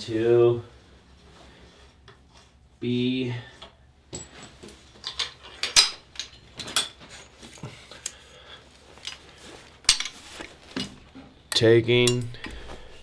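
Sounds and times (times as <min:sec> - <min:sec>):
metal tools clinking: 0:04.1 - 0:13.0.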